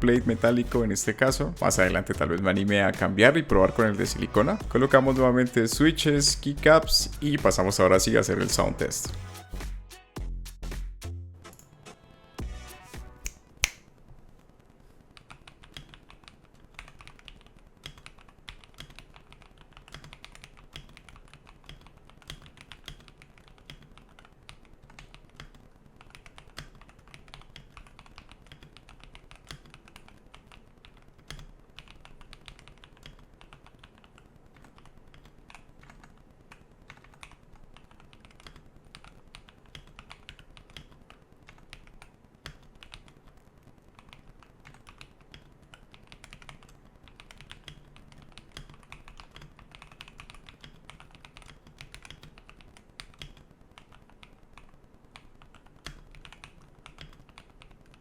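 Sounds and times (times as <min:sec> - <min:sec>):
mechanical keyboard typing clacks: 0:15.2 - 0:43.4, 0:44.0 - 0:58.0.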